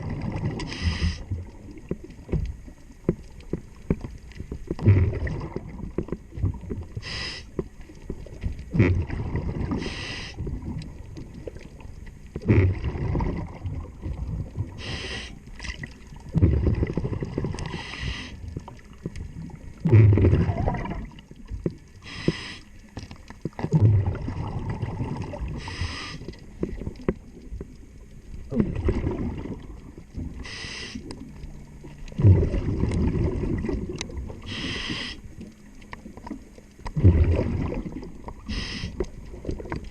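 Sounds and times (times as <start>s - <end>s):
exhaled bubbles rumbling: 0.0s - 39.9s
regulator hiss on inhale: 0.7s - 1.3s, 7.0s - 7.7s, 9.8s - 10.4s, 14.7s - 15.5s, 17.6s - 18.5s, 22.0s - 22.8s, 25.5s - 26.4s, 30.4s - 31.1s, 34.4s - 35.3s, 38.4s - 39.1s.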